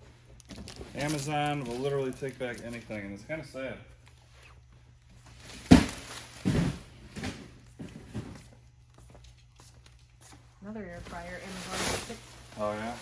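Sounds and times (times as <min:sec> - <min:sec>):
boxes thumping down: 0:05.4 - 0:08.4.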